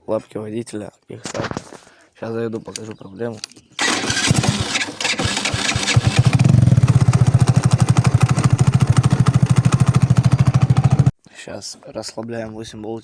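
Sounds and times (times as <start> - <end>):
motorcycle engine starting and idling: 3.8 - 11.1.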